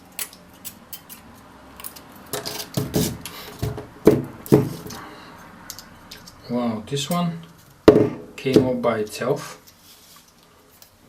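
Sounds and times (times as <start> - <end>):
prying clicks and scraping: 0.2 - 3.7
sharp knocks: 7.9 - 8.8.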